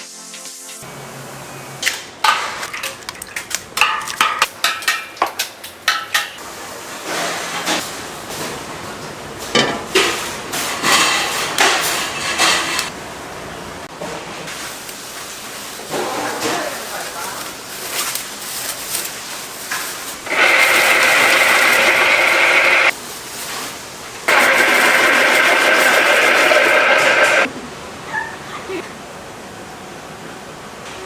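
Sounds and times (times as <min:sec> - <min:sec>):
sharp knocks of pots: 0:03.8 - 0:06.4
pans clattering and scraping: 0:03.9 - 0:06.4, 0:09.4 - 0:12.8.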